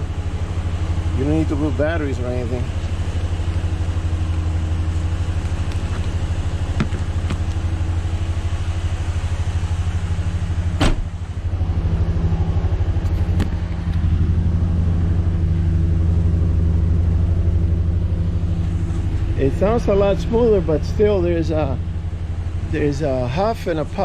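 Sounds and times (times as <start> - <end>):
truck engine running: 0.0 - 24.0.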